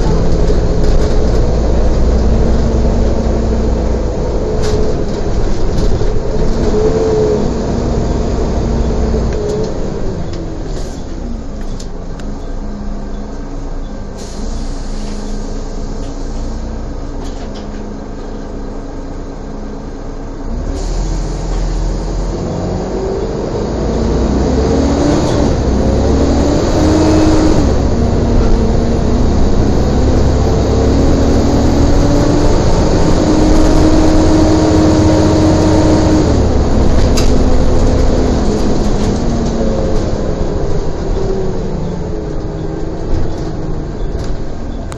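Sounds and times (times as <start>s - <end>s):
bus diesel engine pulling away: 0.0s - 44.9s.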